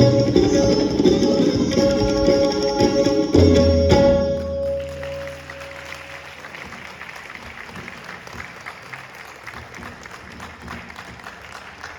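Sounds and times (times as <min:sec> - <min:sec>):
tabla and string notes ringing: 0:00.0 - 0:06.9
audience applause: 0:04.4 - 0:11.9.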